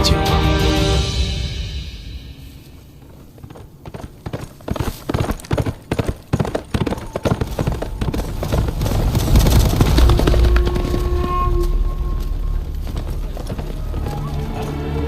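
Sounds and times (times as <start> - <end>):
low rumble: 0.0 - 3.8, 7.8 - 15.0
horse hooves galloping: 3.0 - 15.0.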